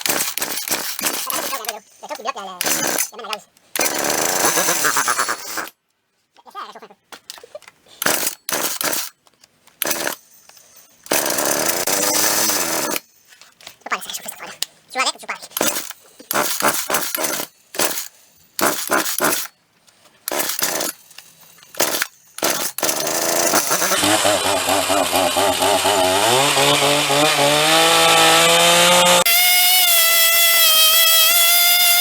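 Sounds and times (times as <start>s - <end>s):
chainsaw engine running: 2.6s - 3.1s, 3.8s - 5.1s, 9.8s - 10.2s, 11.1s - 13.0s, 15.6s - 19.5s, 20.3s - 21.0s, 21.7s - 32.0s.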